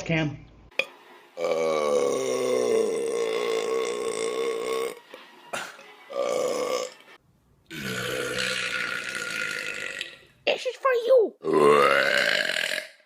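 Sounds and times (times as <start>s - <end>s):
person belching: 1.4s - 7.0s, 7.7s - 10.2s, 11.4s - 13.0s.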